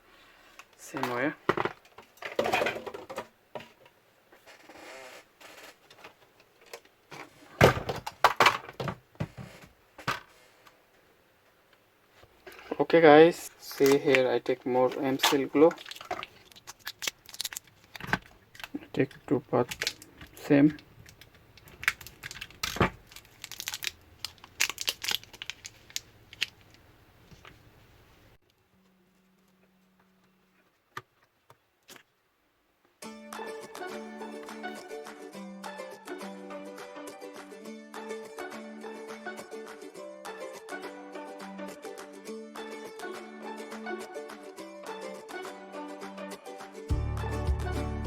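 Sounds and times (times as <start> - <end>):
plastic knocks and clatters: 1.0 - 3.9, 6.0 - 10.3
putty crinkling and rustling: 13.6 - 27.7.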